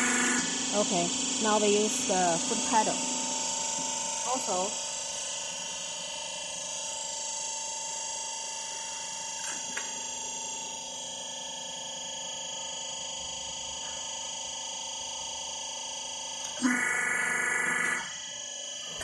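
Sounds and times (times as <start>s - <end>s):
crimping machine working noisily: 0.0s - 4.7s
pump motor humming with whine: 0.0s - 19.0s.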